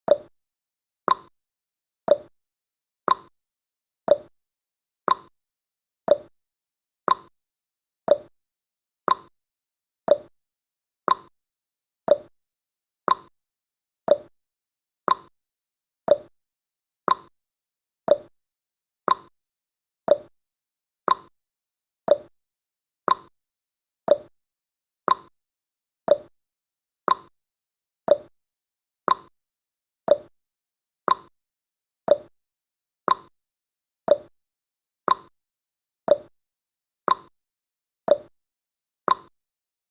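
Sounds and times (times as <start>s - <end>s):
clock tick-tock: 0.1s - 0.3s, 1.1s - 1.3s, 2.1s - 2.3s, 3.1s - 3.3s, 4.1s - 4.3s, 5.1s - 5.3s, 6.1s - 6.3s, 7.1s - 7.3s, 8.1s - 8.3s, 9.1s - 9.3s, 10.1s - 10.3s, 11.1s - 11.3s, 12.1s - 12.3s, 13.1s - 13.3s, 14.1s - 14.3s, 15.1s - 15.3s, 16.1s - 16.3s, 17.1s - 17.3s, 18.1s - 18.3s, 19.1s - 19.3s, 20.1s - 20.3s, 21.1s - 21.3s, 22.1s - 22.3s, 23.1s - 23.3s, 24.1s - 24.3s, 25.1s - 25.3s, 26.1s - 26.3s, 27.1s - 27.3s, 28.1s - 28.3s, 29.1s - 29.3s, 30.1s - 30.3s, 31.1s - 31.3s, 32.1s - 32.3s, 33.1s - 33.3s, 34.1s - 34.3s, 35.1s - 35.3s, 36.1s - 36.3s, 37.1s - 37.3s, 38.1s - 38.3s, 39.1s - 39.3s.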